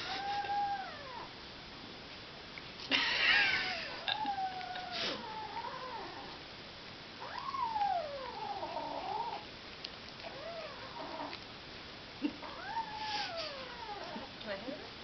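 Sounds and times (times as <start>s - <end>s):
kitten yowling growls: 0.0s - 1.3s, 3.2s - 6.4s, 7.2s - 9.5s, 10.2s - 11.4s, 12.2s - 14.4s.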